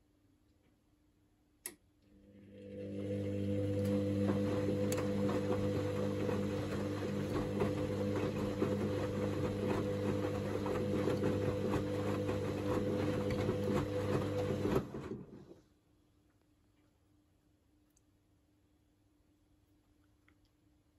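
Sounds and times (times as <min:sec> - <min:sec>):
washing machine motor humming: 0:02.1 - 0:15.6
wet laundry tumbling with knocks: 0:04.0 - 0:15.5.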